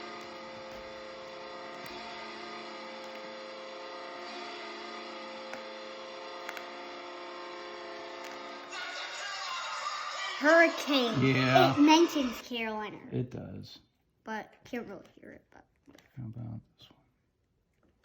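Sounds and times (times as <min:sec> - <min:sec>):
arena goal horn: 0:00.0 - 0:12.4.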